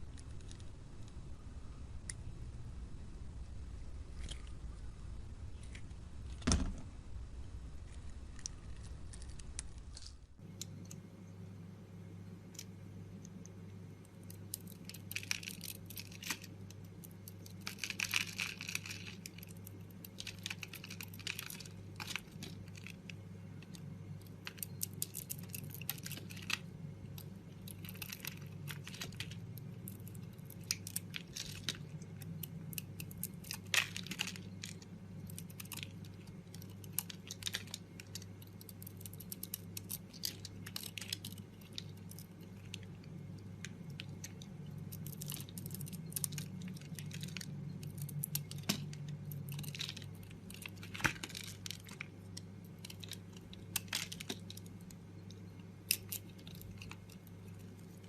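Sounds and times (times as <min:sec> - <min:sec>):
steady low hum: 0:00.0 - 0:58.0
blade crunching dry soap: 0:12.4 - 0:58.0.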